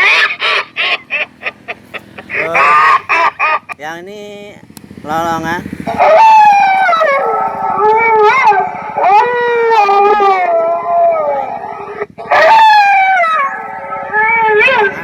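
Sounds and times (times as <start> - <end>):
recorded dog howl through loudspeaker: 5.9 - 15.0.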